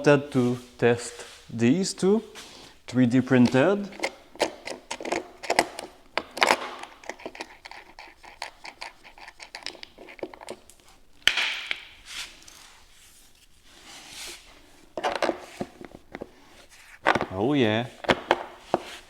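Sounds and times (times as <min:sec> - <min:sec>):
plastic parts clicking and knocking: 0:03.4 - 0:11.9, 0:15.0 - 0:16.3, 0:17.0 - 0:17.4, 0:18.0 - 0:19.0.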